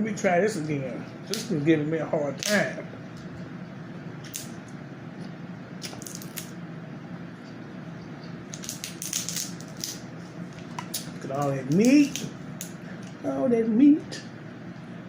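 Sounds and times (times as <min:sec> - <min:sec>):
steady low hum: 0:00.0 - 0:15.0
crab shell cracking by hand: 0:08.5 - 0:10.0.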